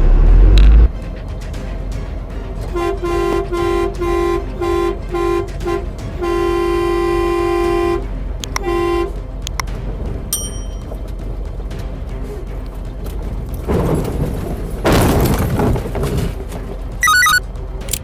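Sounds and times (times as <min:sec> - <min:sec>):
road and engine rumble: 0:00.0 - 0:18.0
car horn honking: 0:02.7 - 0:09.6.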